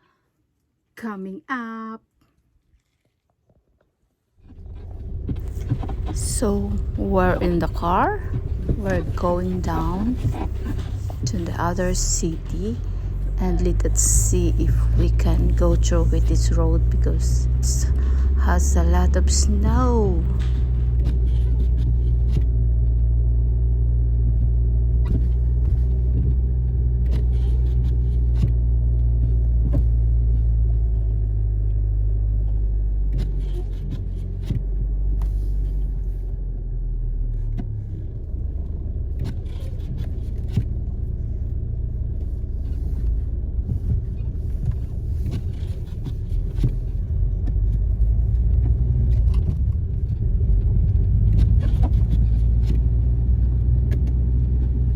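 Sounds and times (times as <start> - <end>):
car engine and road rumble: 4.4 - 54.9.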